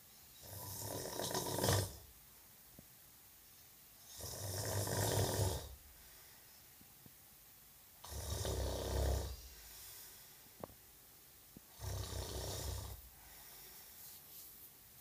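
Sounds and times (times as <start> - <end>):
loud snoring: 0.4 - 2.1, 4.1 - 5.8, 8.0 - 9.5, 11.7 - 13.1.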